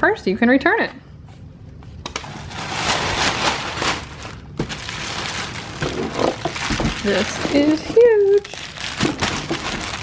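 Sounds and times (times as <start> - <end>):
packaging rustling and crinkling: 2.2 - 10.0.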